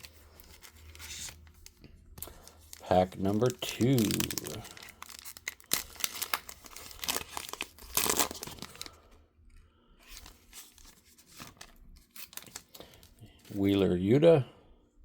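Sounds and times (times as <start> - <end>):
wrapper tearing and crinkling: 0.0 - 9.1, 10.1 - 13.1.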